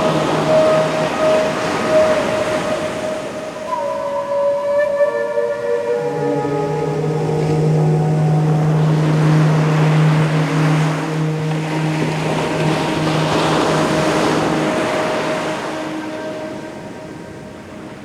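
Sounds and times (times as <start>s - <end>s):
soft flute note: 0.0s - 18.0s
ocean surf washing in: 6.2s - 18.0s.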